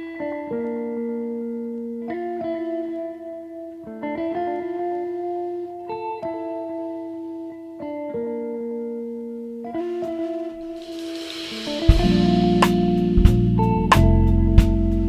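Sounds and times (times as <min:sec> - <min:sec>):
slow sustained chords: 0:09.8 - 0:13.7.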